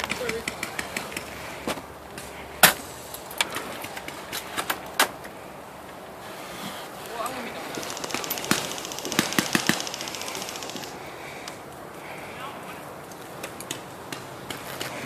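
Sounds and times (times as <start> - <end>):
low steady background noise: 0.0 - 15.0
airsoft gunfire cracks: 8.1 - 11.0.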